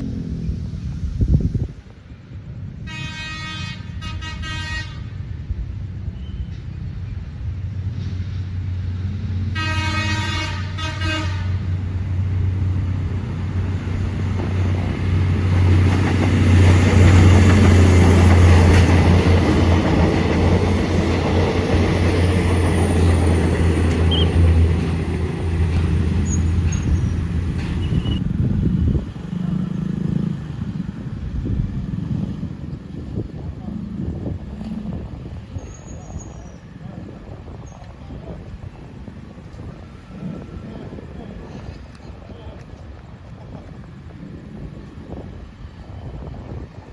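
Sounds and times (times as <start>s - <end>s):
diesel train engine hum: 0.0s - 46.9s
train horn blasts: 2.8s - 5.2s, 9.5s - 11.9s
train wheels on rails: 5.0s - 46.9s.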